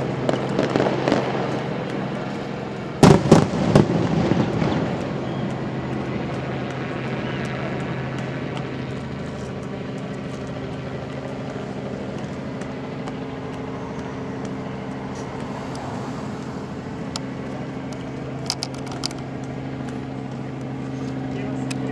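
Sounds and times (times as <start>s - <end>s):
vehicle engine humming: 0.0s - 21.9s
sharp clicks: 12.6s - 20.0s.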